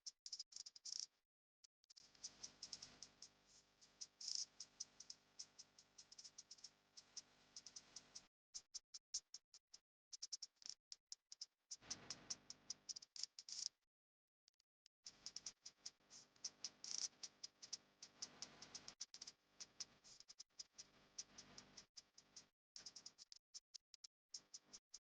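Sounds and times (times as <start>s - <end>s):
faint clicking and ticking: 14.5s - 25.0s.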